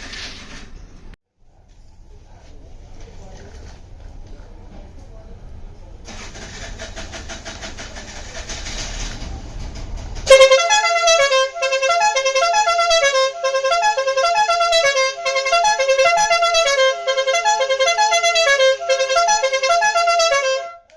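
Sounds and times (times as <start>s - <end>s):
air horn motor buzzing: 10.2s - 20.9s
musical horn playing tune: 10.2s - 20.9s.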